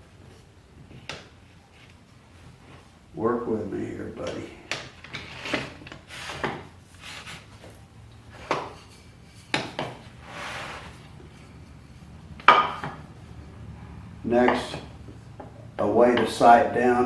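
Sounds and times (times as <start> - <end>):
wood sliding rub: 4.2 - 16.5
wooden parts knocking: 8.2 - 10.2, 12.3 - 13.2.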